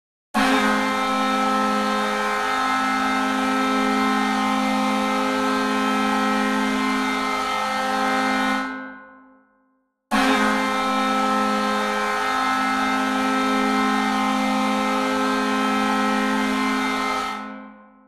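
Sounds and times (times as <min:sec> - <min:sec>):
hockey goal horn: 0:00.4 - 0:09.3, 0:10.1 - 0:18.0.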